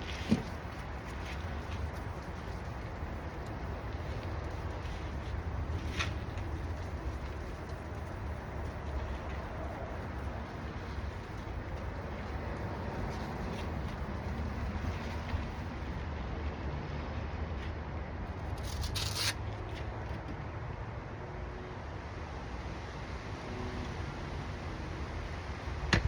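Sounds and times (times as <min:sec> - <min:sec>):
sandpaper rubbing on plastic: 0:00.0 - 0:15.8, 0:18.6 - 0:19.4.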